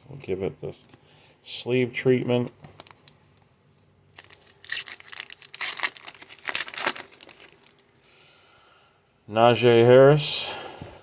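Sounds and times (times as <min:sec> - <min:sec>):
plastic sleeve crinkling: 0:02.6 - 0:08.0.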